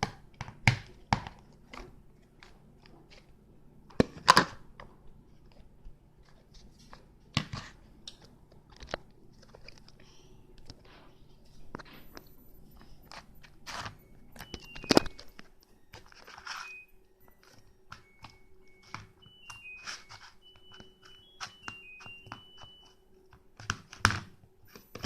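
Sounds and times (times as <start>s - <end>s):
short high beeps: 14.0s - 17.4s, 18.0s - 23.0s.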